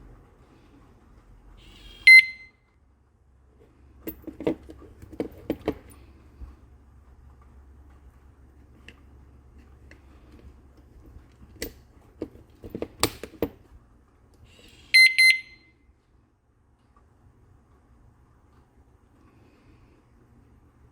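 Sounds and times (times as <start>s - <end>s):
high-pitched alarm beep: 1.7s - 2.6s, 15.0s - 15.7s
padlock clicks and knocks: 11.6s - 13.6s.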